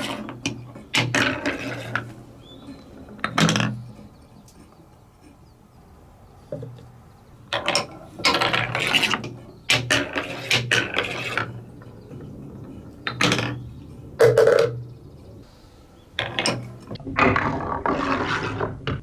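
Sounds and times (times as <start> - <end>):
balls clicking down plastic track: 0.0 - 4.7, 7.4 - 15.0, 16.2 - 19.0.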